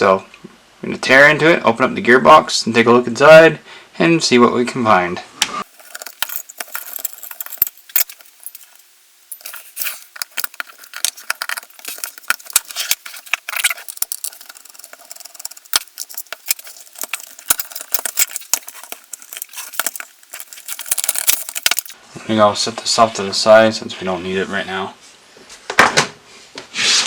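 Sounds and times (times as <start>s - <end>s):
plastic and metal parts clicking: 5.7s - 22.0s.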